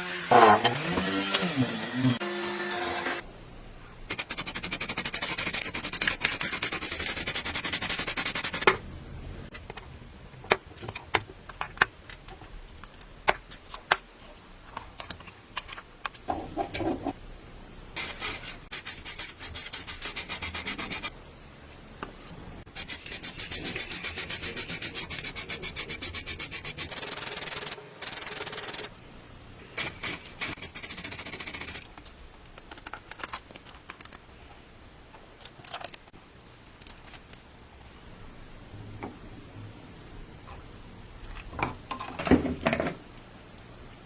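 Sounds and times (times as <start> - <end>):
hand sanding strokes: 4.1 - 8.7, 18.0 - 21.1, 22.7 - 28.9, 29.8 - 31.8.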